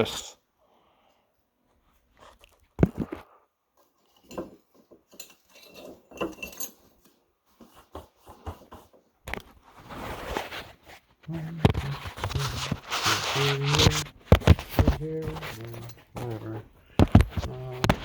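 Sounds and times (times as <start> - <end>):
metal parts clinking and knocking: 4.1 - 7.2.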